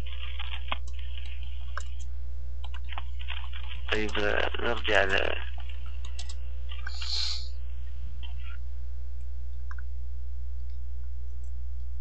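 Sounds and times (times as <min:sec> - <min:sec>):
low electrical hum: 0:00.0 - 0:12.0
faint clicks: 0:05.8 - 0:06.9.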